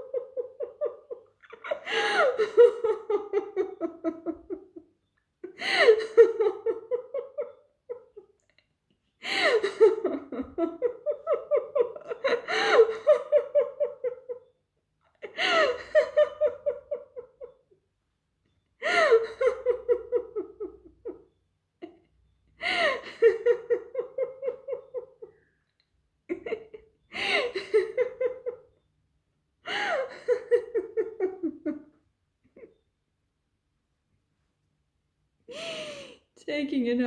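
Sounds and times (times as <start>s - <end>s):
woman laughing: 0.0s - 8.4s, 9.4s - 14.5s, 15.2s - 17.7s, 18.8s - 22.1s, 22.7s - 25.4s, 26.3s - 28.7s, 29.7s - 32.0s.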